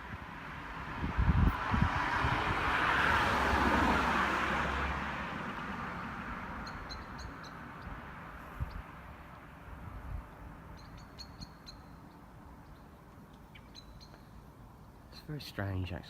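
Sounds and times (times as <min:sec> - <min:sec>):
car passing: 0:00.0 - 0:15.4
bird chirps: 0:06.6 - 0:07.9, 0:10.7 - 0:15.3.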